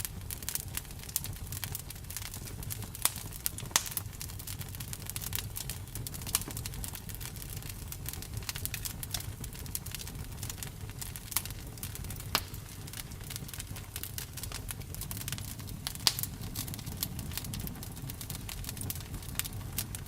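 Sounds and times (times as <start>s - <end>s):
campfire crackling and popping: 0.0s - 20.0s
low rumble of flame: 0.0s - 20.0s.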